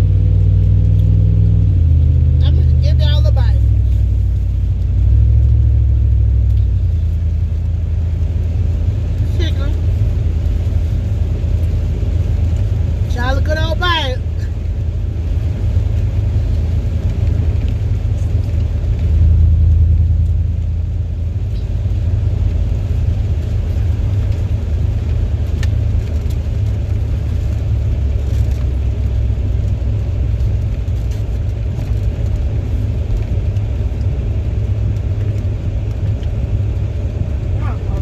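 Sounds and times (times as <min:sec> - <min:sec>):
car cabin road rumble: 0:00.0 - 0:38.0.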